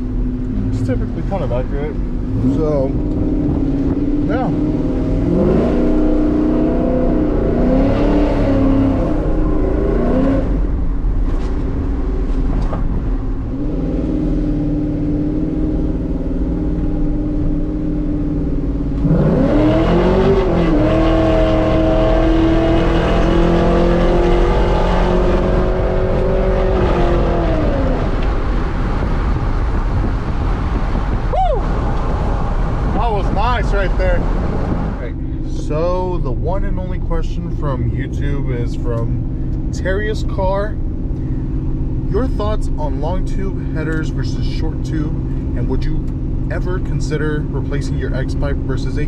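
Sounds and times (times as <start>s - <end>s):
pickup truck engine revving: 0.0s - 11.2s, 13.4s - 36.7s.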